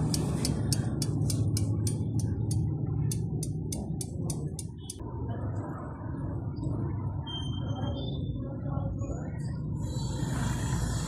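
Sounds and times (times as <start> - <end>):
engine valve ticking: 0.0 - 5.0
low engine hum: 0.0 - 5.0.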